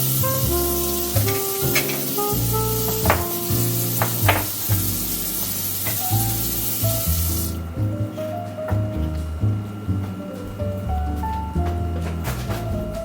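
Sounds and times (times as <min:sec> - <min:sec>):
steady hiss: 0:00.0 - 0:08.7.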